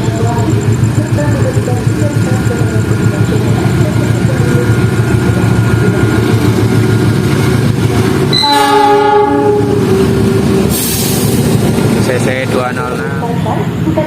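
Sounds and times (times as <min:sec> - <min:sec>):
diesel locomotive rumbling: 0:00.0 - 0:14.0
multi-tone train horn: 0:08.3 - 0:10.8.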